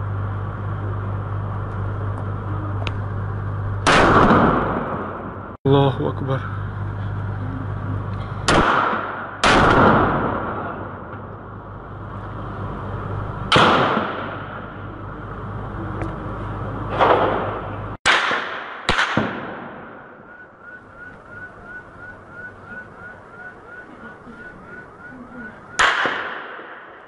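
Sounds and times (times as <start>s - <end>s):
gunshots echoing off buildings: 3.8s - 5.5s, 8.5s - 11.1s, 13.5s - 14.7s, 16.9s - 20.3s, 25.8s - 27.0s.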